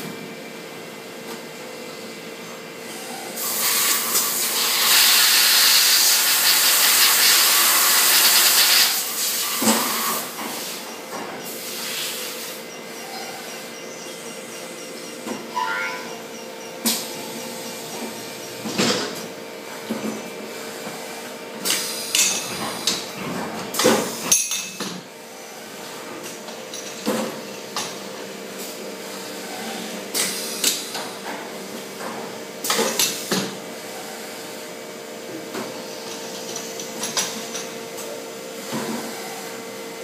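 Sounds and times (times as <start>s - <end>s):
machine hum: 12.2s - 20.6s.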